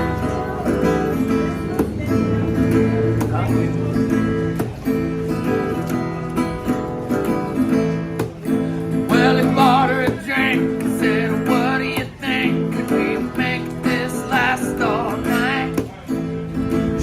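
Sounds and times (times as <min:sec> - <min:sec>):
strummed acoustic guitar: 0:00.0 - 0:17.0
person singing: 0:08.8 - 0:16.0.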